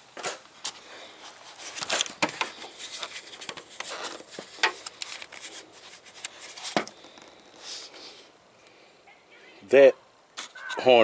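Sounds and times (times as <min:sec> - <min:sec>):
handling rustling: 0:00.6 - 0:07.9.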